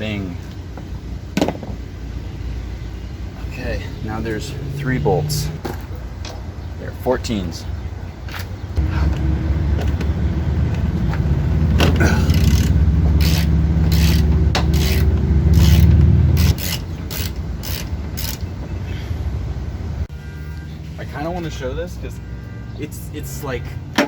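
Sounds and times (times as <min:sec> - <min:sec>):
ratchet rattling: 0:12.0 - 0:18.5.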